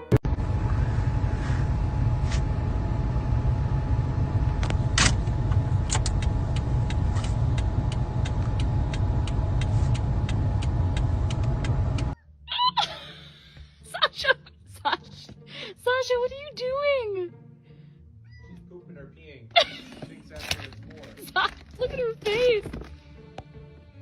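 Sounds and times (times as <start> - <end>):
faint steady hum: 0.0 - 12.2
low rumble: 0.0 - 12.2
regular ticks: 5.9 - 12.2.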